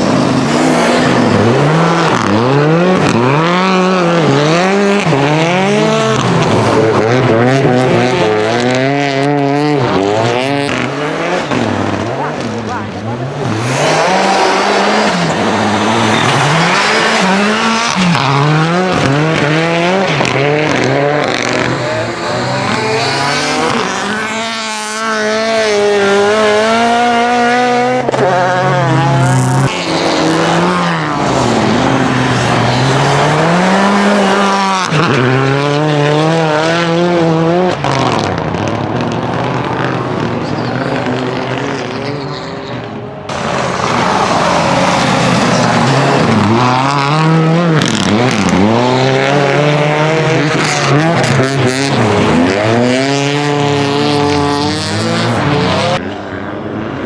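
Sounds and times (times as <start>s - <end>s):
rally car engine at full throttle: 0.0s - 57.0s.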